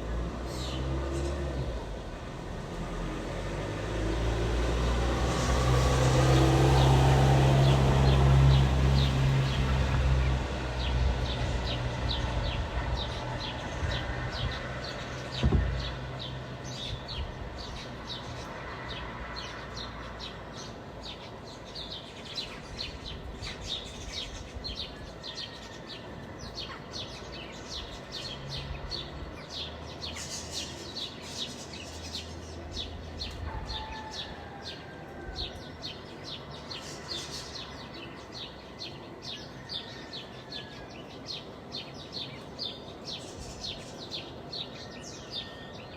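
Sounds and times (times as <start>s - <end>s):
small birds chirping: 0.0s - 5.0s, 6.8s - 45.9s
sharp thump: 15.4s - 15.9s.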